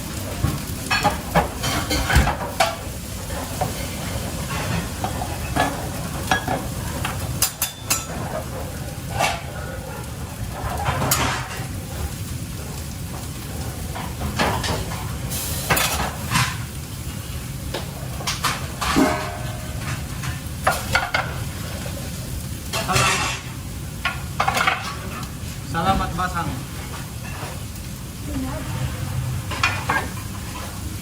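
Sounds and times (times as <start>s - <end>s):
food sizzling in a pan: 0.0s - 31.0s
clinks and knocks against pan: 4.5s - 8.2s, 18.2s - 21.4s.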